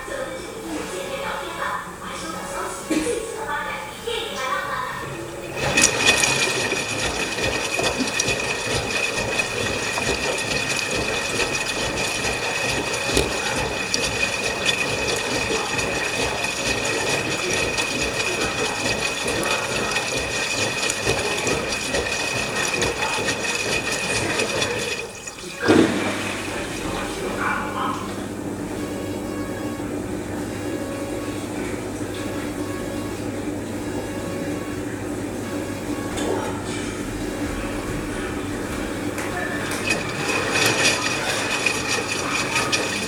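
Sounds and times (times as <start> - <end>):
washing machine filling with water: 0.0 - 43.0.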